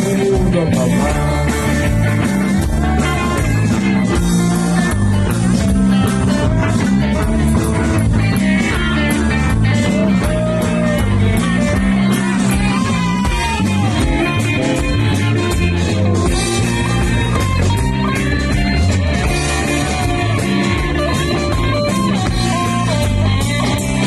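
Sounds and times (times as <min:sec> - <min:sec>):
electric guitar: 0:00.0 - 0:24.0
live rock band playing: 0:00.0 - 0:24.0.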